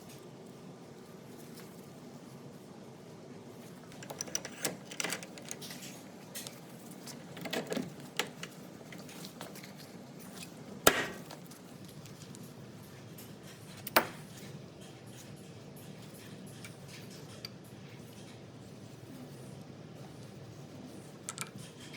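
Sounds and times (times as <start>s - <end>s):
metal parts clicking and knocking: 3.8s - 9.7s, 13.2s - 14.4s.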